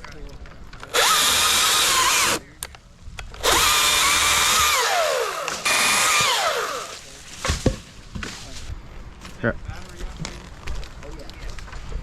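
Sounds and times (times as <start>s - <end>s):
cordless power tool motor whining: 0.9s - 2.4s, 3.4s - 7.0s.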